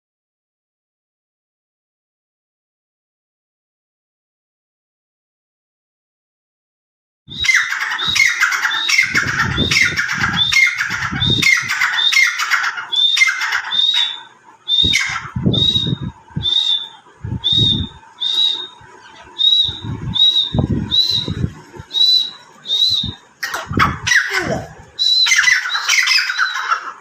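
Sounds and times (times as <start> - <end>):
birds calling: 7.3 - 27.0.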